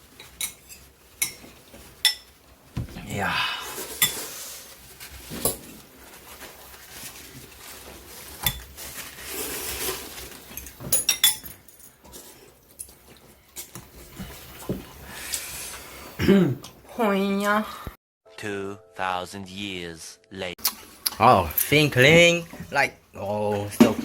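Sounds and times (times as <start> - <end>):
cutlery clinking against dishes: 0.2 - 2.3, 10.5 - 13.0.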